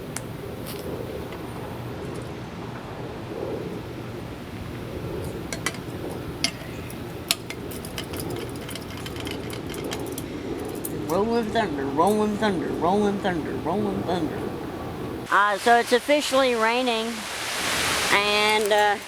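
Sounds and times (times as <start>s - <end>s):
low outdoor rumble: 0.0s - 16.8s
metal gear clinking: 6.4s - 11.2s.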